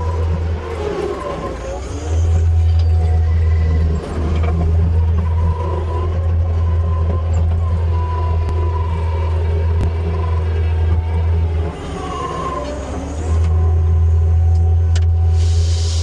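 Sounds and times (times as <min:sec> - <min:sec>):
skid steer engine droning: 0:00.0 - 0:16.0.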